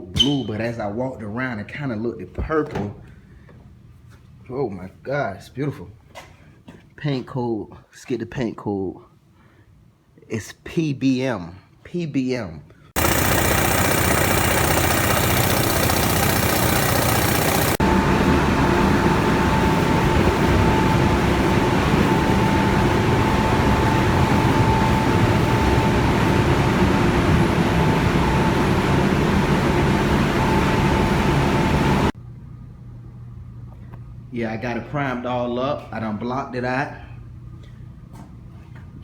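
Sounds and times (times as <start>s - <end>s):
machinery running loudly: 13.0s - 32.1s
high-pitched hum: 13.0s - 32.2s.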